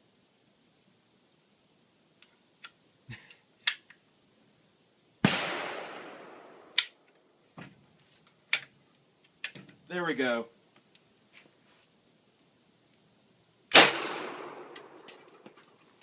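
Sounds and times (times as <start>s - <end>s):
gunshot with echo: 5.2s - 6.7s, 13.7s - 15.0s
gun action clicks: 6.7s - 7.0s.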